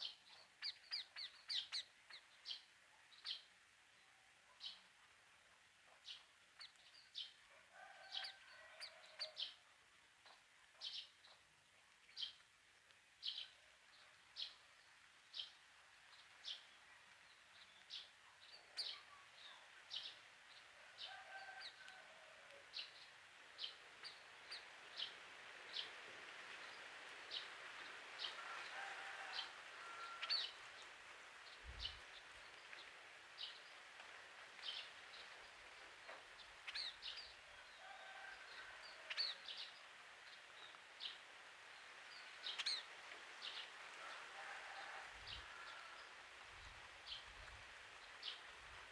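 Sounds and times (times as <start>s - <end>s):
birds chirping: 0.0s - 3.5s, 42.2s - 43.6s.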